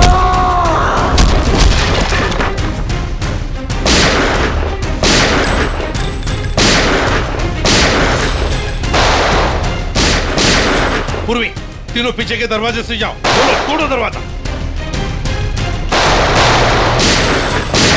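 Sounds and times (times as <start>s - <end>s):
dramatic action score: 0.0s - 17.9s
heavy booming hits: 15.9s - 17.9s.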